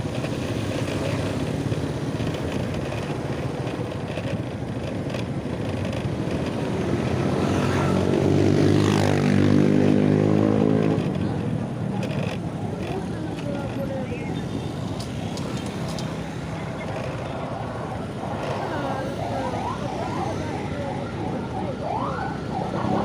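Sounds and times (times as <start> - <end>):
vehicle engine running: 0.0 - 21.6
louder engine passing by: 6.8 - 11.4.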